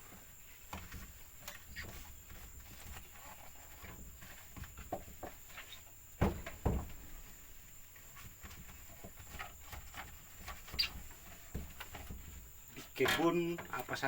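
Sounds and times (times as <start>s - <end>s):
light knocks and rustling: 0.0s - 14.0s
loud thumps: 6.1s - 7.1s.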